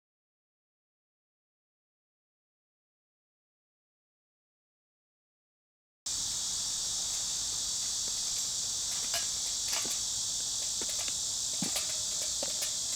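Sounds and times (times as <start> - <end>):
high-pitched insect chorus: 6.1 - 12.9.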